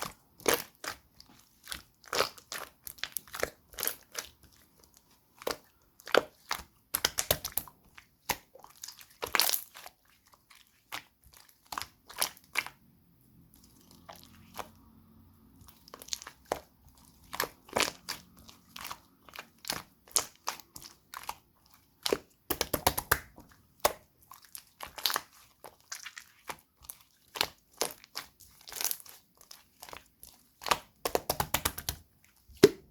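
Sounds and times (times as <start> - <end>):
slime clicking and popping: 5.4 - 9.8, 22.0 - 25.4, 30.6 - 32.9.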